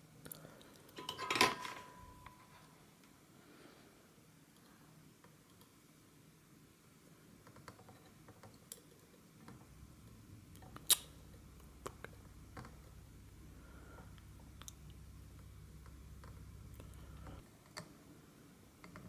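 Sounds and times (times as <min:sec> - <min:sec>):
faint low hum: 0:09.4 - 0:19.0.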